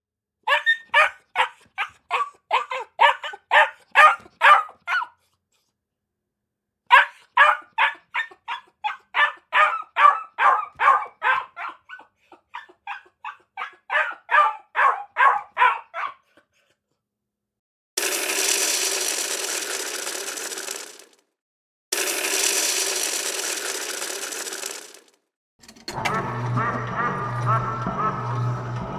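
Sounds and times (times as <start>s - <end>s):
dog barking: 0.5s - 5.2s, 6.9s - 16.4s.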